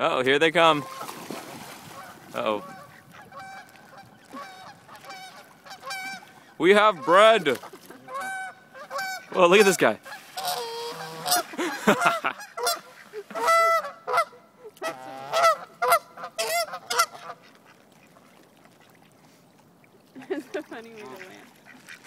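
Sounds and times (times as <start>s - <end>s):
geese honking: 0.6s - 1.2s, 1.8s - 17.8s.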